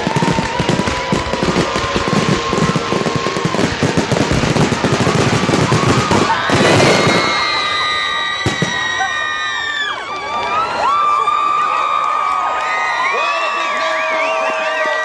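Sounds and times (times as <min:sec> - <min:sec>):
loud firework burst: 0:00.0 - 0:09.4
firework bangs and crackles: 0:00.0 - 0:09.6
long high whistles: 0:00.0 - 0:11.5.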